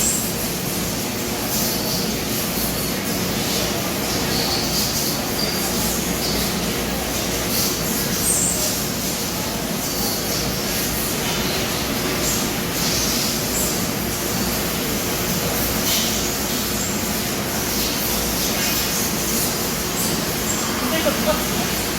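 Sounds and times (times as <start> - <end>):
vacuum cleaner running: 11.5 - 21.9.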